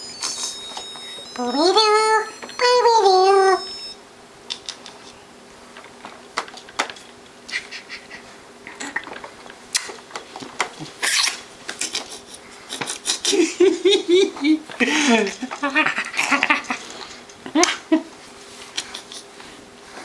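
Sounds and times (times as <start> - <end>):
baby's voice: 1.4 - 3.7.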